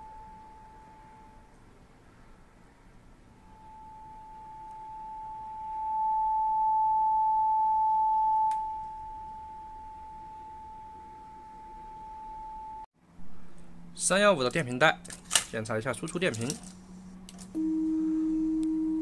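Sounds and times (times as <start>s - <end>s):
steady sine test tone: 0.0s - 1.8s, 3.2s - 12.9s, 17.6s - 19.0s.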